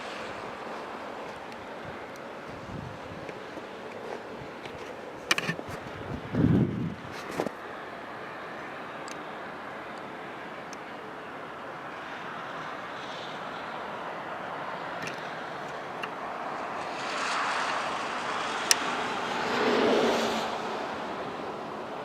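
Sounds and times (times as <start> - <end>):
vehicle passing by: 12.0 - 22.0.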